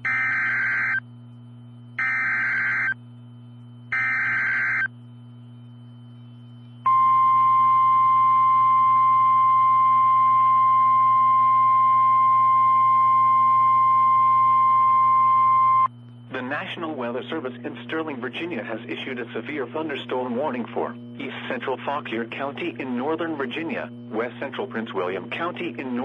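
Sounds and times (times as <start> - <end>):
warbling data tones: 0.0 - 1.1, 2.0 - 3.0, 3.9 - 4.9.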